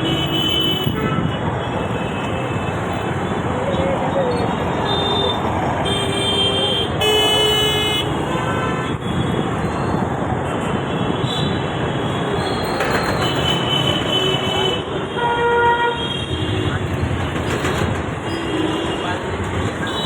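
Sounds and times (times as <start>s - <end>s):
train rumbling: 12.2s - 15.3s, 16.3s - 20.0s.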